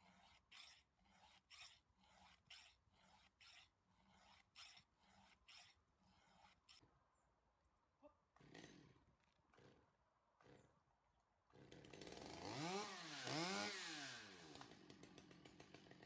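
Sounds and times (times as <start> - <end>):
file rasping on chainsaw chain: 0.0 - 6.8.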